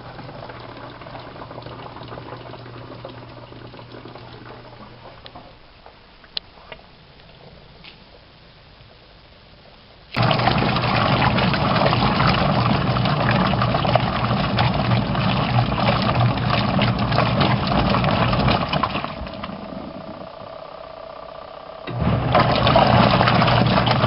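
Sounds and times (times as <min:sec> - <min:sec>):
washing machine motor hum: 0:00.0 - 0:05.7, 0:10.1 - 0:24.0
washing machine rattling and churning: 0:10.2 - 0:20.4, 0:21.9 - 0:24.0.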